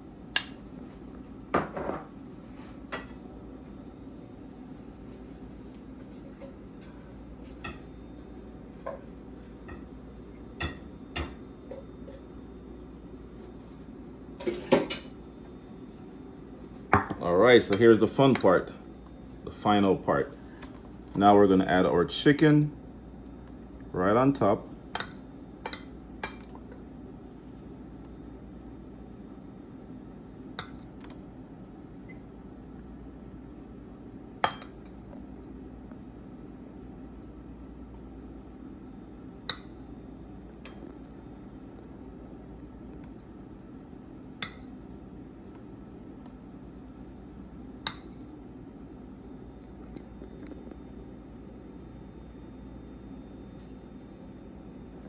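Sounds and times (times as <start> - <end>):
low room hum: 0.0 - 55.0
utensils clinking on a plate: 14.4 - 15.1.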